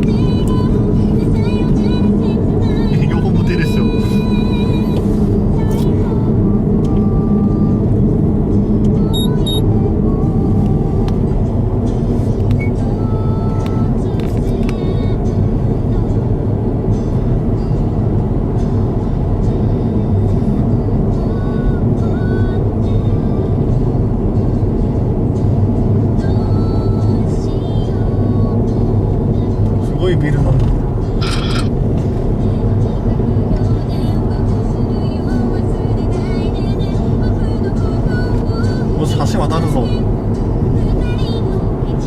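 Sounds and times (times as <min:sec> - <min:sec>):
car road and engine noise: 0:00.0 - 0:42.0
short high beeps: 0:09.1 - 0:09.7.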